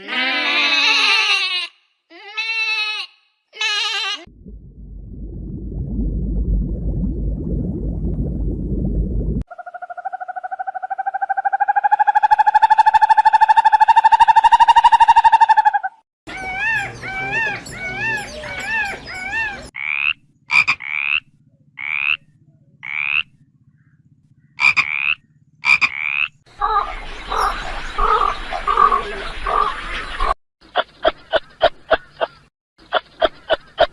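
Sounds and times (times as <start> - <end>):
warbling animal call: 9.5 - 30.3.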